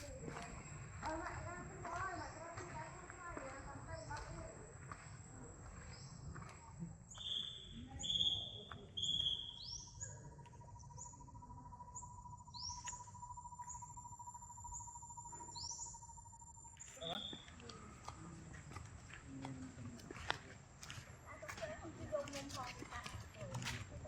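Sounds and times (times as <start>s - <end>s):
birds calling: 0.0s - 24.0s
loud whistled notes: 7.1s - 9.9s
high-pitched insect drone: 7.1s - 17.4s.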